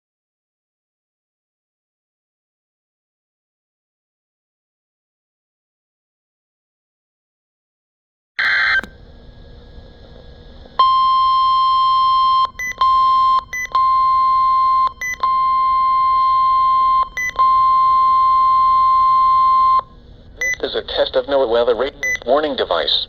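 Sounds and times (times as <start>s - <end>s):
loud steady warning beep: 8.4s - 8.9s, 10.8s - 20.8s, 22.0s - 22.3s.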